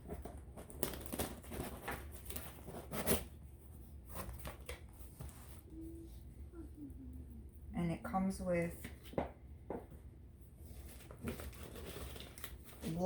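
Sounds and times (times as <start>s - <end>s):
packaging rustling and tearing: 0.0s - 3.4s, 10.8s - 13.0s.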